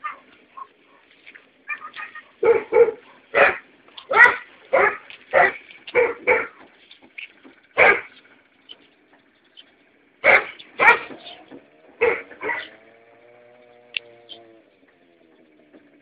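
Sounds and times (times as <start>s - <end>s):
dog barking: 0.0s - 1.1s, 1.7s - 6.6s, 7.8s - 8.1s, 10.2s - 11.3s, 12.0s - 12.8s.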